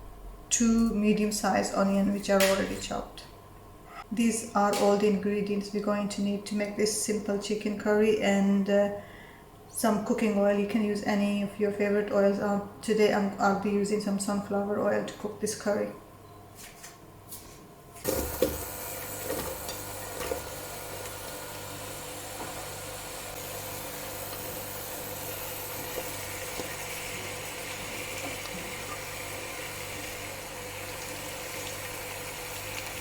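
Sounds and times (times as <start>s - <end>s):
food sizzling in oil: 18.1s - 33.0s.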